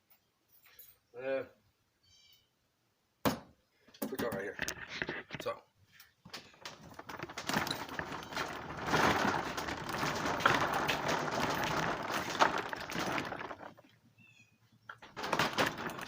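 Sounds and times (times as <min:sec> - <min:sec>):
rattling and knocking contents: 0:06.3 - 0:14.0, 0:14.9 - 0:16.0
tool box rolling on casters: 0:06.7 - 0:14.0, 0:14.9 - 0:16.0.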